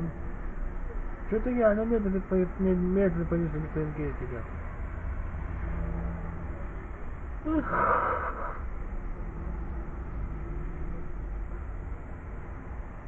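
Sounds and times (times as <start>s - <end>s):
low rumble: 4.5s - 13.0s
person breathy sound: 7.4s - 8.7s.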